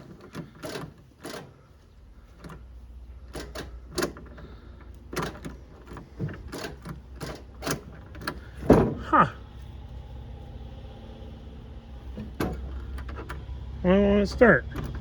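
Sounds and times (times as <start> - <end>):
low steady hum: 1.3 - 15.0
ignition key clicking: 3.2 - 8.6.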